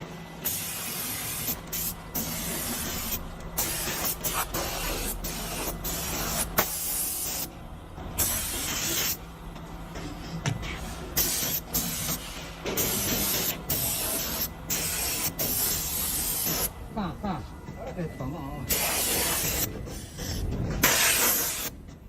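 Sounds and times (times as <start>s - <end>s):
spray hissing bursts: 0.4s - 7.5s, 11.1s - 16.7s, 18.7s - 19.7s, 20.8s - 21.8s.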